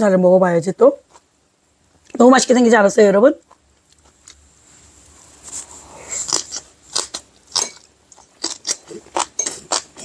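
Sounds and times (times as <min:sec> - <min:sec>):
person chewing food: 0:05.6 - 0:10.0.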